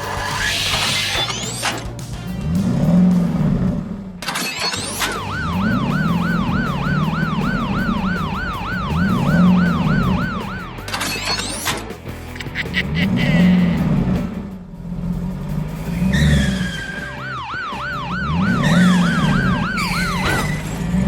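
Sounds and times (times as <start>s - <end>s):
music with low swooping tone: 1.8s - 4.2s, 5.1s - 11.0s
fast warbling siren: 4.8s - 11.6s, 16.2s - 20.8s.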